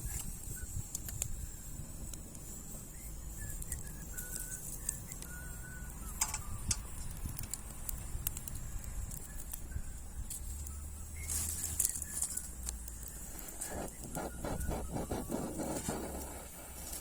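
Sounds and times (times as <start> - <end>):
low rumble of fire: 0.0 - 17.0
wood fire crackling and popping: 0.0 - 17.0
faint high chirps: 2.4 - 7.3.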